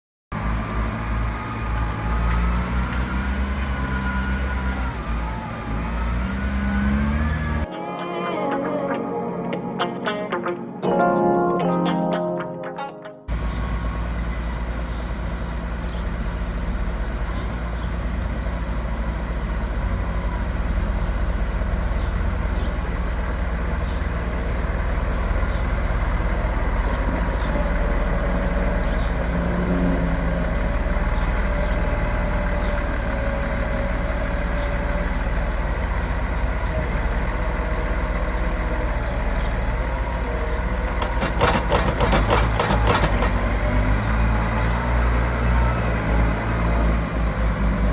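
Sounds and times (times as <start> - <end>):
farm vehicle engine under load: 0.3 - 7.7, 13.3 - 47.9
rattling clatter: 40.9 - 43.6.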